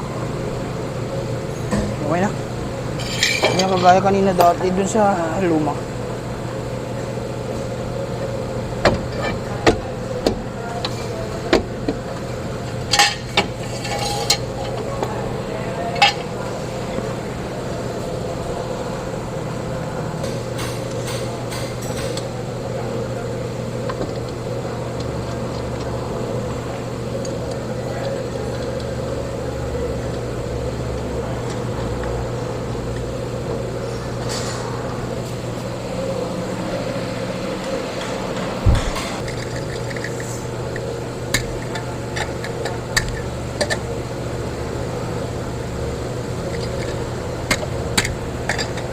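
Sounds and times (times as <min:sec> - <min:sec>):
steady background hum: 0:00.0 - 0:48.9
tools clinking against metal: 0:03.0 - 0:04.0.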